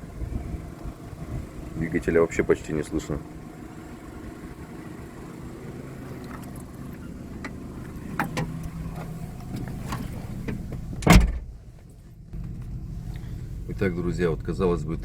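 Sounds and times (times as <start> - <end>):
car engine idling: 0.0 - 15.0
loud thump: 9.9 - 11.5.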